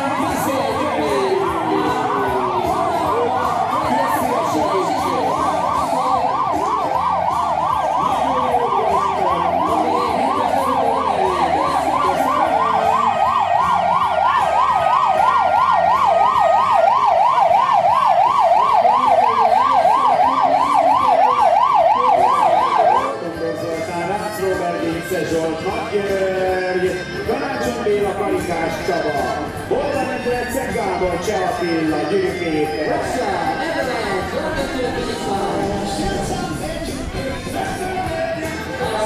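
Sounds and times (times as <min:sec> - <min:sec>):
electronic siren yelping: 0:00.0 - 0:23.3, 0:28.8 - 0:38.9.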